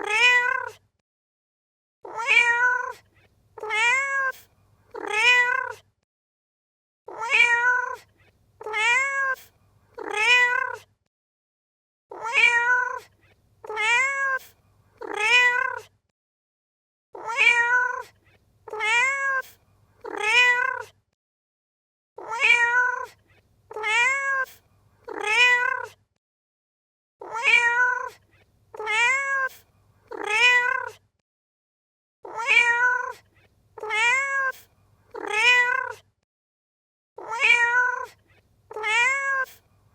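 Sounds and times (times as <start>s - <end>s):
cat meowing: 0.0s - 0.8s, 2.0s - 3.0s, 3.6s - 5.8s, 7.1s - 10.9s, 12.1s - 15.9s, 17.2s - 20.9s, 22.2s - 26.0s, 27.2s - 31.0s, 32.3s - 33.2s, 33.8s - 36.0s, 37.2s - 39.6s.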